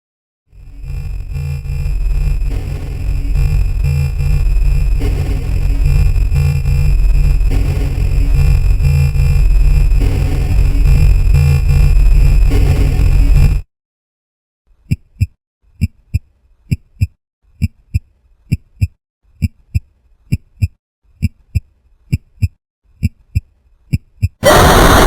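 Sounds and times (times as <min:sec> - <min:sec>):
heartbeat thumps: 0:02.4 - 0:13.5.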